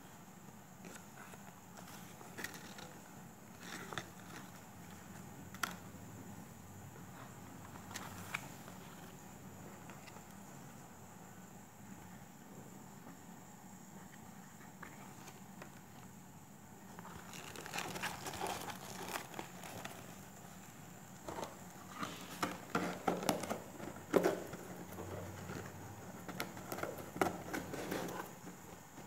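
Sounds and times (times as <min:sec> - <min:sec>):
paper and card crinkling: 0:17.0 - 0:20.7.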